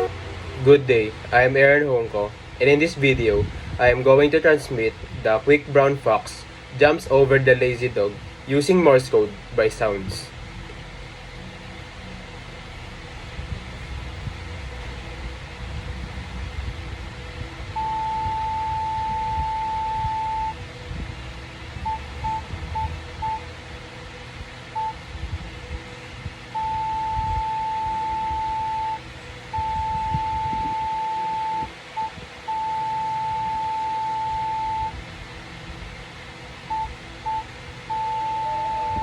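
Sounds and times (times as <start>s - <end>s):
morse code beep tone: 17.7s - 20.6s, 21.8s - 23.4s, 24.8s - 25.0s, 26.6s - 35.0s, 36.7s - 39.0s.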